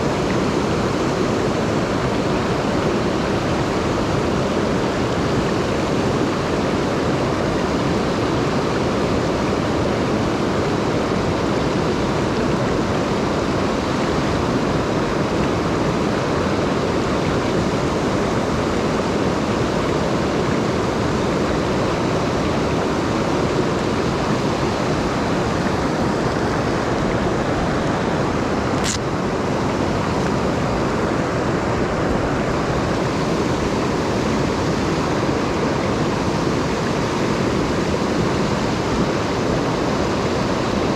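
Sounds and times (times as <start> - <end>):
mountain stream rushing: 0.0 - 40.9
brief click: 28.8 - 29.1.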